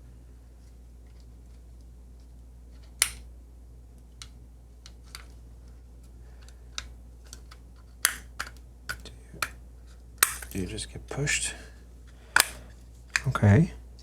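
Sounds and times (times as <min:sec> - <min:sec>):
small parts clicking and tapping: 0:04.0 - 0:10.6, 0:12.3 - 0:13.4.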